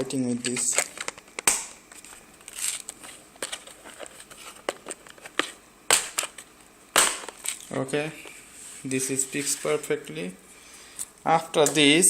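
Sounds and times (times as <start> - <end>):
plastic cover clicking and scraping: 0.4 - 7.6.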